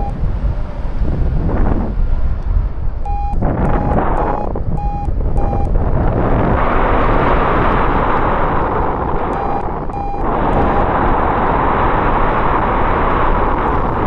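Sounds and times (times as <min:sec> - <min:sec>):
variometer beeping: 0:00.0 - 0:00.3, 0:03.0 - 0:13.4
wind buffeting microphone: 0:00.0 - 0:14.0.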